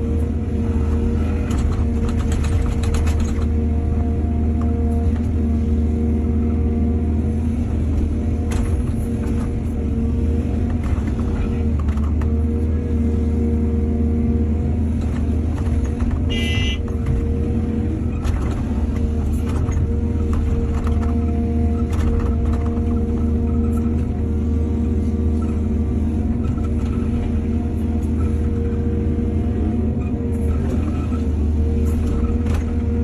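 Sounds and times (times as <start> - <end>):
excavator diesel engine running: 0.0 - 33.0
knocks and clatter: 1.4 - 3.6, 15.0 - 17.3.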